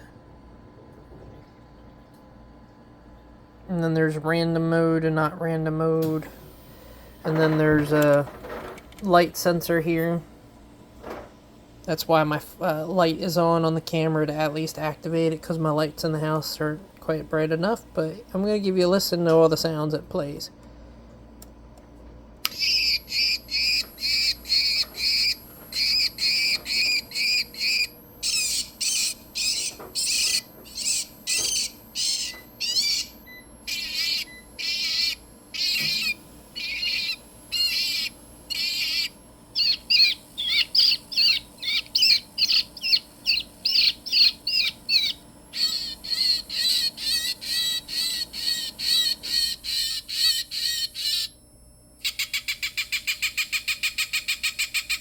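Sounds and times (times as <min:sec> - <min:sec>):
shrill recorded bird calls: 0:22.5 - 0:51.3, 0:52.0 - 0:55.0.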